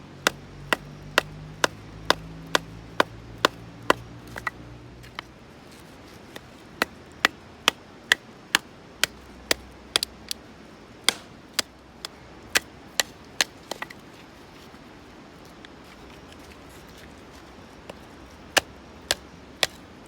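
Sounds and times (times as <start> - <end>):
firewood being chopped: 0.1 - 5.3, 6.3 - 10.4, 11.0 - 14.0, 17.9 - 19.9.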